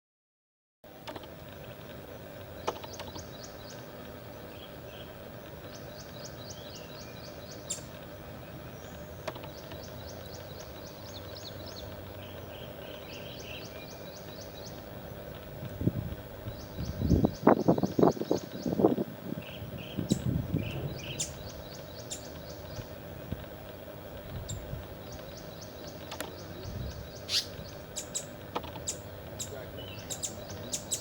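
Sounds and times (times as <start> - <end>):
steady outdoor hiss: 0.9 - 31.0
bird calling high short notes: 25.9 - 28.3
faint sharp clicks: 26.0 - 26.4.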